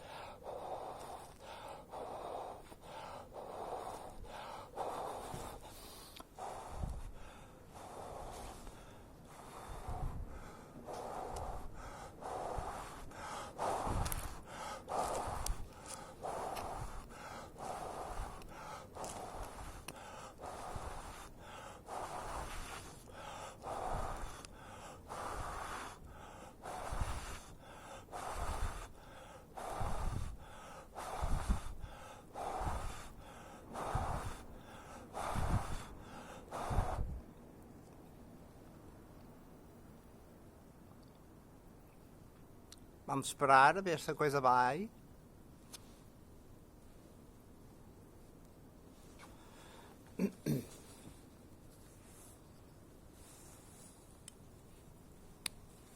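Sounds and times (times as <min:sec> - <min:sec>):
person blowing onto embers: 0:00.0 - 0:37.2, 0:49.0 - 0:52.5.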